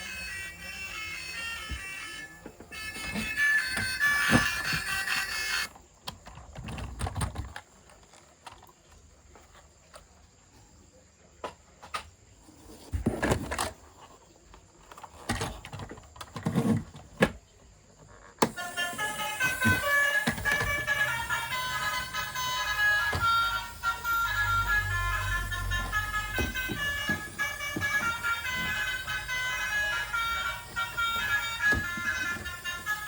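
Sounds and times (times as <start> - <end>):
toys and packaging handling: 0.0 - 10.2, 11.8 - 17.4, 18.0 - 33.0
background music: 18.5 - 33.0.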